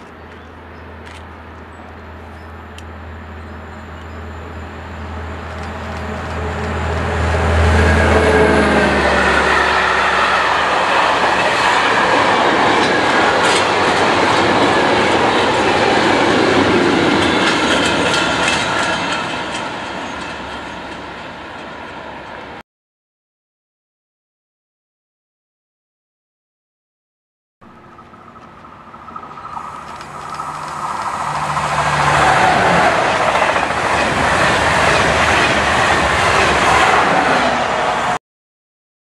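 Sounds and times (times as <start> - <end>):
train passing: 0.0 - 22.6, 27.7 - 38.2
wheels clicking over rail joints: 5.2 - 7.1, 10.3 - 21.8, 27.7 - 36.4.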